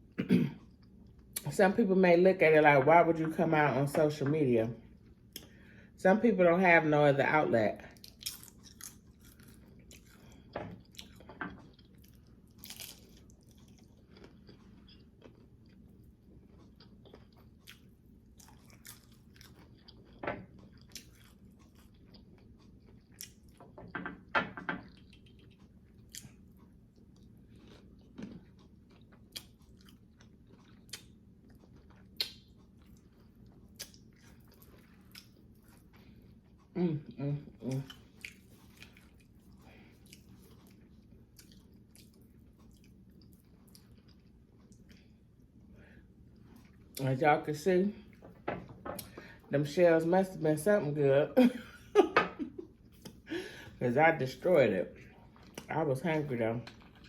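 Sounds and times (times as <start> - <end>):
crunchy taco shells being chewed: 7.9 - 36.8, 37.4 - 47.1, 56.3 - 57.0.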